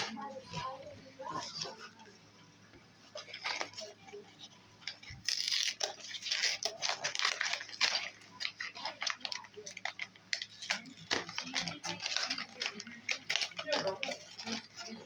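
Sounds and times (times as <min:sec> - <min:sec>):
packaging crackling and crinkling: 0:03.0 - 0:15.0.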